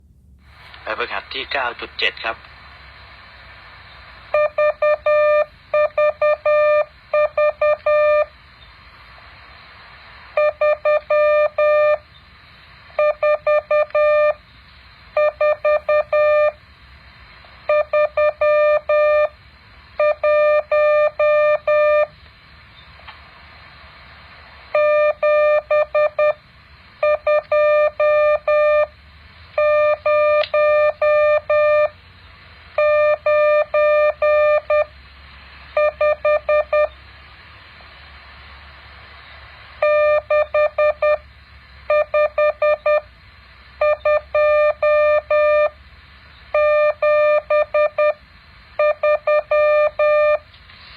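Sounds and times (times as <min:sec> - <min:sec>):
faint hiss: 0:00.2 - 0:04.4, 0:08.3 - 0:10.4, 0:22.1 - 0:24.8, 0:36.9 - 0:39.8, 0:50.4 - 0:50.9
morse code beeps: 0:04.3 - 0:08.3, 0:10.4 - 0:12.0, 0:13.0 - 0:14.4, 0:15.2 - 0:16.6, 0:17.7 - 0:19.4, 0:20.0 - 0:22.1, 0:24.7 - 0:26.4, 0:27.0 - 0:28.9, 0:29.6 - 0:32.0, 0:32.8 - 0:34.9, 0:35.8 - 0:36.9, 0:39.8 - 0:41.2, 0:41.9 - 0:43.1, 0:43.8 - 0:45.8, 0:46.5 - 0:48.2, 0:48.8 - 0:50.4.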